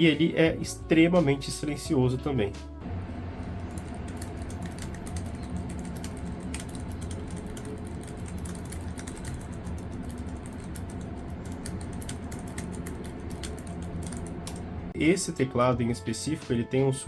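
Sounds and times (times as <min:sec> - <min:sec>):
mechanical keyboard typing: 0:03.4 - 0:14.7.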